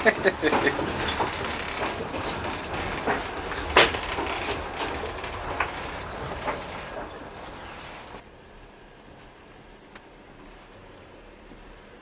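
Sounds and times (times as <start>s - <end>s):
wheels knocking on rails: 0.0s - 8.2s
train carriage rumbling on track: 0.0s - 12.0s.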